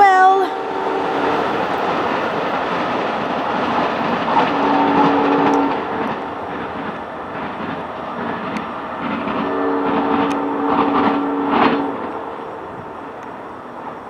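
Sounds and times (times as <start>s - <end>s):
train horn chord: 0.0s - 2.1s, 4.4s - 6.2s, 9.4s - 13.4s
train wheels rumbling on rail: 0.0s - 14.0s.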